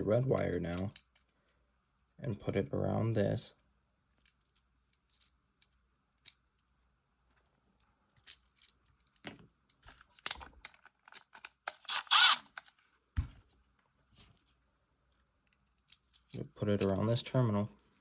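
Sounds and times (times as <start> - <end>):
wire clicks and scrapes: 10.0 - 12.8.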